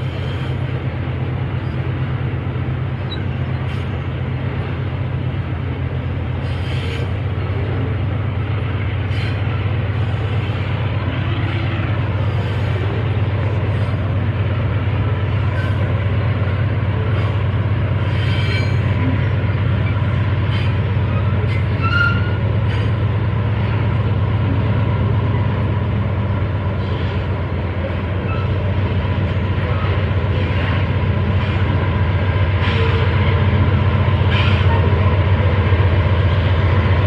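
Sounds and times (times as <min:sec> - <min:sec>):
freight train rumbling past: 0:00.0 - 0:37.0
wheels clicking and squealing: 0:18.0 - 0:22.9.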